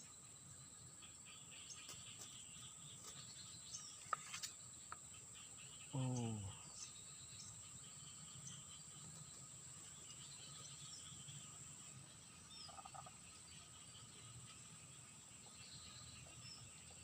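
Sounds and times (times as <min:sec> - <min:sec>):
bird chirps: 0:00.0 - 0:17.0
high insect whine: 0:00.0 - 0:17.0
person grunting: 0:06.0 - 0:06.6.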